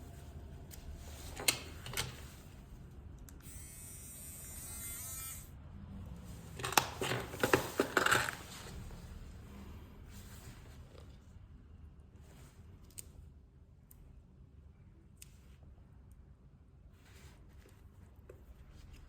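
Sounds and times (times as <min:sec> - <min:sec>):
buzz: 0:03.5 - 0:05.5.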